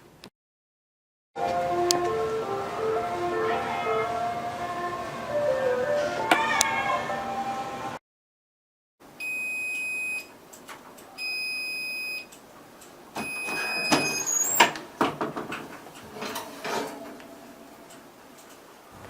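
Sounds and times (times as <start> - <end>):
clattering knocks: 13.9 - 18.3.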